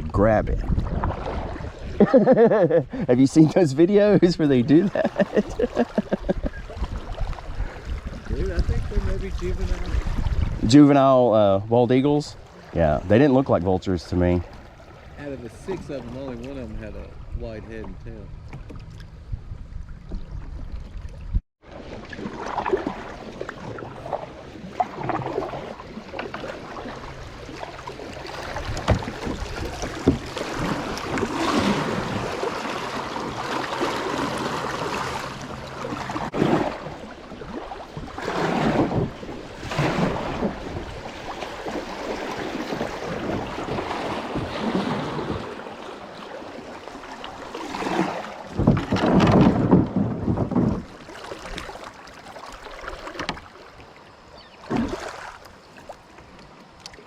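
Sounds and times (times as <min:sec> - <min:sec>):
wind buffeting microphone: 0:00.0 - 0:02.1, 0:04.0 - 0:10.8, 0:47.8 - 0:51.0
water rushing and splashing: 0:00.0 - 0:19.2, 0:19.8 - 0:57.0.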